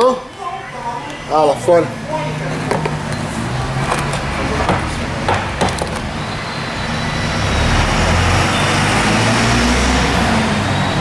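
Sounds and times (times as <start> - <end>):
motor vehicle running: 1.3 - 11.0
sharp knocks: 4.6 - 6.1.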